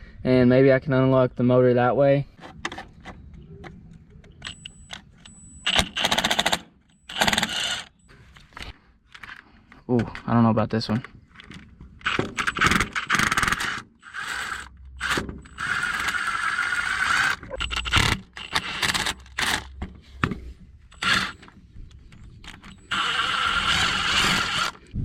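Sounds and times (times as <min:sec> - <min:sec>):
ratchet clicks: 0:04.4 - 0:07.9
noisy ratcheting: 0:05.6 - 0:08.0, 0:11.4 - 0:19.8, 0:20.9 - 0:21.6, 0:22.4 - 0:24.8.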